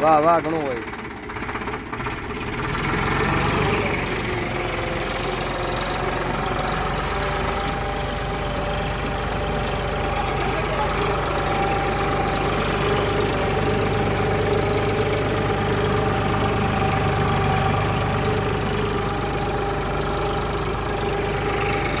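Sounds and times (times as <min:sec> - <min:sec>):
tractor engine running: 0:00.1 - 0:22.0.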